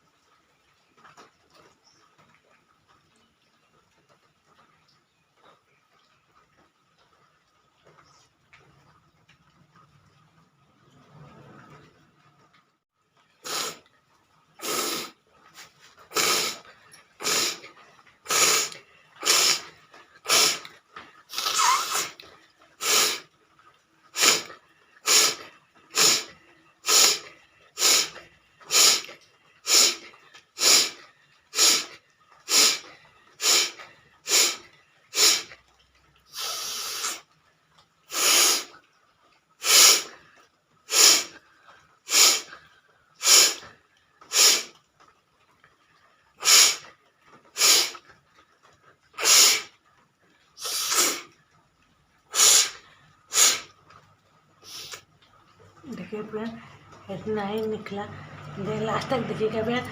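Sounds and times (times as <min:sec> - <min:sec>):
person blowing nose: 0:13.4 - 0:13.8, 0:14.6 - 0:15.1, 0:16.1 - 0:16.6, 0:17.2 - 0:17.7, 0:18.3 - 0:20.7, 0:21.3 - 0:22.2, 0:22.8 - 0:23.2, 0:24.2 - 0:29.1, 0:29.7 - 0:35.5, 0:36.4 - 0:37.2, 0:38.1 - 0:38.7, 0:39.6 - 0:40.2, 0:40.9 - 0:41.3, 0:42.1 - 0:42.5, 0:43.2 - 0:43.6, 0:44.3 - 0:44.7, 0:46.4 - 0:46.9, 0:47.6 - 0:48.0, 0:49.2 - 0:49.7, 0:50.6 - 0:51.3, 0:52.3 - 0:53.7.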